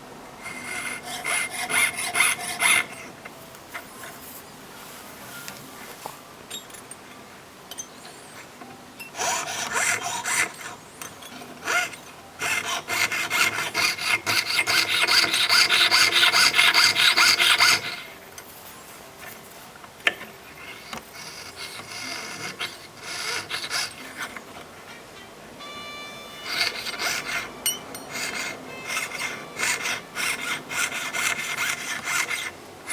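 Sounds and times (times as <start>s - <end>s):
saw blade cutting metal sheet: 11.7s - 18.1s, 21.1s - 24.4s, 26.4s - 32.9s.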